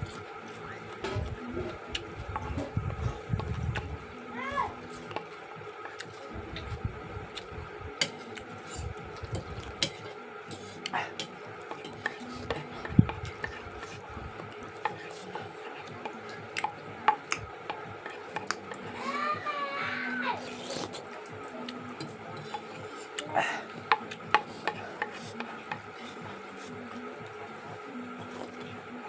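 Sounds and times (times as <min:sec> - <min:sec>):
utensil stirring and scraping: 0:00.0 - 0:29.0
utensil clicking against dish: 0:07.4 - 0:08.6, 0:09.2 - 0:18.9, 0:21.2 - 0:26.5.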